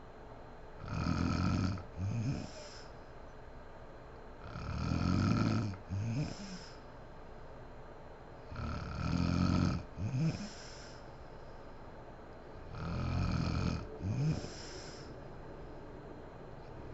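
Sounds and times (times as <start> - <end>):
woman snoring heavily: 0.8 - 2.9, 4.4 - 6.8, 8.5 - 11.0, 12.7 - 15.1.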